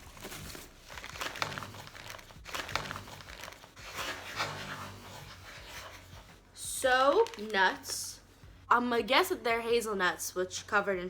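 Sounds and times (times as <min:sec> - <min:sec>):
snack packaging crinkling: 0:00.0 - 0:04.6, 0:07.0 - 0:08.0.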